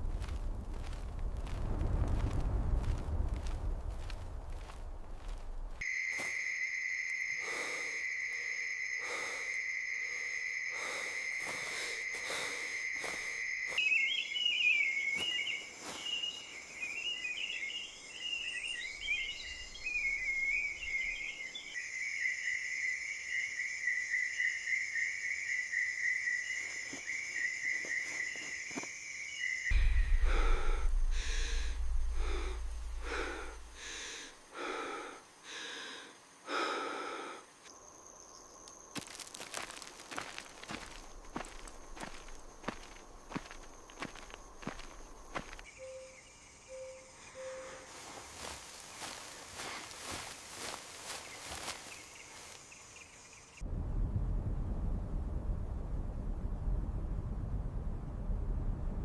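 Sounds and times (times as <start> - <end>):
low rumble: 0.0 - 5.8, 29.7 - 34.4, 53.6 - 59.0
shrill wildlife chirring: 5.8 - 35.2, 40.1 - 53.6.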